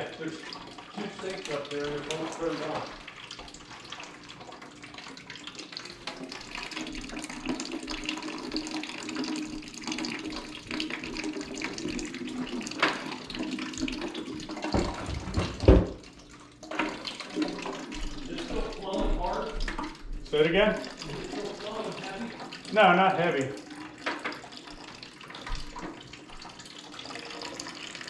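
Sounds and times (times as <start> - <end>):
water running: 0.0 - 28.0.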